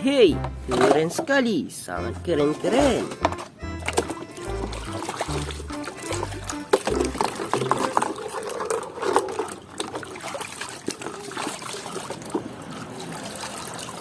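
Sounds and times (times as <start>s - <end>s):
toys clicking and knocking: 2.6s - 4.5s, 5.9s - 9.5s
water splashing and trickling: 3.8s - 14.0s.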